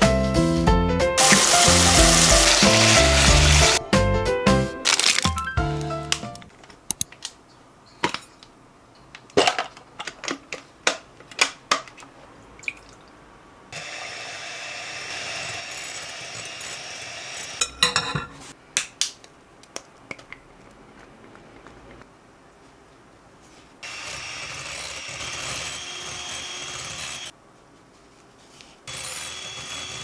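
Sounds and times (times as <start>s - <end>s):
tap running: 1.2s - 3.8s
dishes and utensils clinking: 17.6s - 18.5s.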